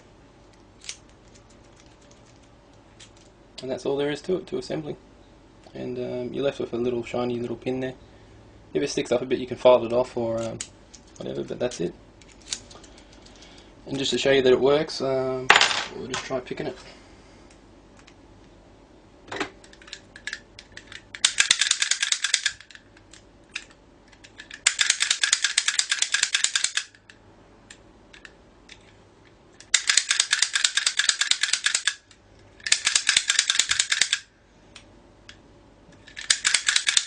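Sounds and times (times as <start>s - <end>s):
pick gun rapid clicking: 20.8s - 22.7s, 24.5s - 27.0s, 29.6s - 32.0s, 32.7s - 34.3s, 36.2s - 37.0s.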